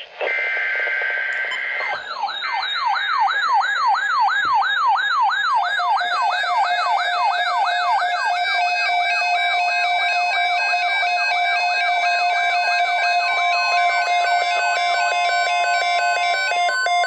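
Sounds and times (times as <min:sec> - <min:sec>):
electronic siren alert sweeping down: 0:00.3 - 0:17.0
beeping high tone: 0:01.3 - 0:03.8.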